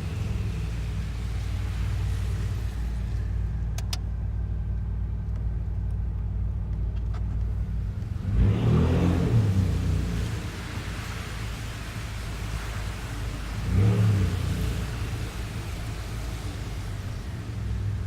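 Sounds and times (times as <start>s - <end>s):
engine idling exhaust rumble: 0.0s - 18.0s
engine revving: 8.1s - 11.3s, 13.5s - 15.9s.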